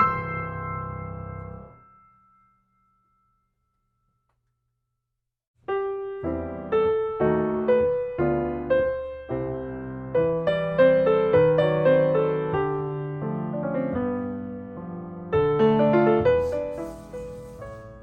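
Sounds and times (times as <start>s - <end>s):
piano music: 0.0s - 1.9s, 5.7s - 18.0s.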